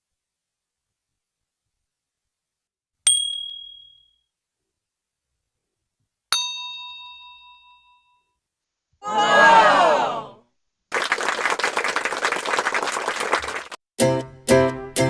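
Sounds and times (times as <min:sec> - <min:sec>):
bright metallic ding: 0:03.1 - 0:04.2, 0:06.4 - 0:08.3.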